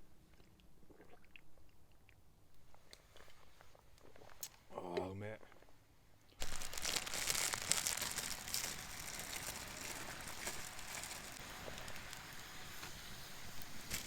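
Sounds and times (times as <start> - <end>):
food sizzling in a pan: 6.4 - 14.0.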